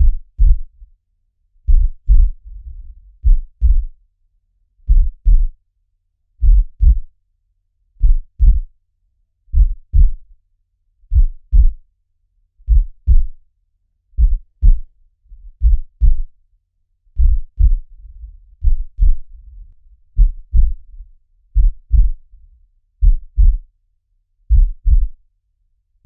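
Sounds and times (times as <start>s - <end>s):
heartbeat thumps: 0.0s - 0.7s, 1.7s - 3.9s, 4.9s - 5.6s, 6.4s - 7.1s, 8.0s - 8.7s, 9.5s - 10.2s, 11.1s - 11.8s, 12.7s - 13.4s, 14.2s - 16.3s, 17.2s - 21.0s, 21.6s - 22.4s, 23.0s - 23.7s, 24.5s - 25.2s.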